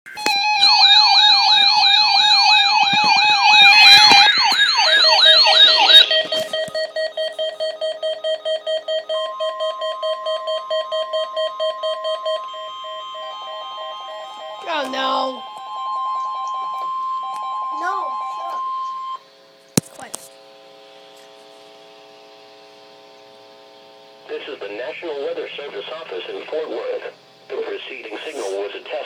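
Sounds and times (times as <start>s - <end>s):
electronic alert sirens warbling: 0.1s - 19.3s
steady warning alarm tone: 0.1s - 19.6s
rapid beeping: 0.4s - 19.3s.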